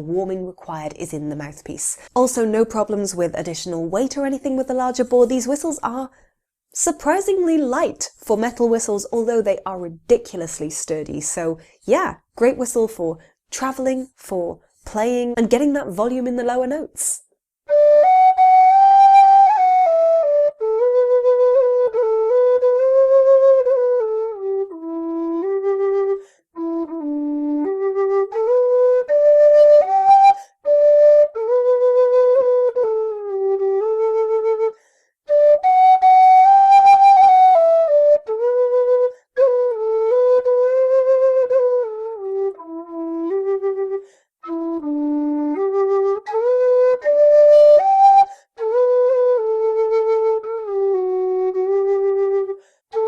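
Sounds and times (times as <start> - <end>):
breaths between phrases: 1.8 - 2.2, 6.0 - 6.5, 11.5 - 11.9, 13.1 - 13.5, 26.2 - 26.5, 34.8 - 35.2, 44.0 - 44.4, 52.6 - 52.9
low whistle playing a melody: 17.7 - 53.0.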